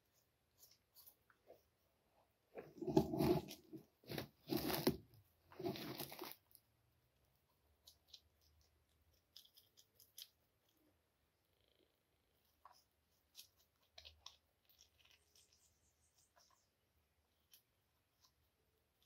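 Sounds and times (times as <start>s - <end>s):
fish scraping and crunching: 2.6s - 6.4s.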